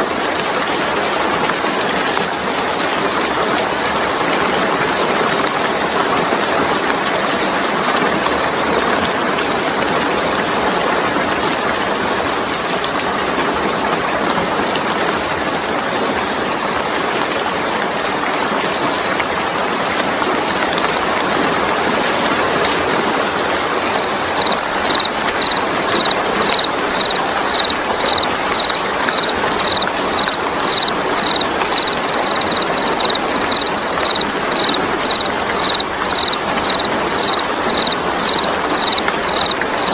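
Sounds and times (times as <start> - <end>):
rain falling: 0.0 - 39.9
high repeating chirp: 23.9 - 39.9.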